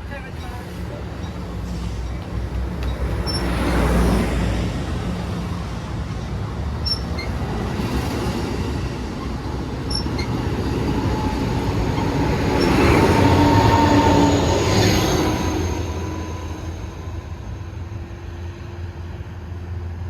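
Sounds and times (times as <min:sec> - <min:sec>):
train wheels rumbling on rail: 0:00.0 - 0:20.0
wheel squeal whine: 0:02.8 - 0:03.8, 0:06.8 - 0:07.6, 0:09.9 - 0:16.8.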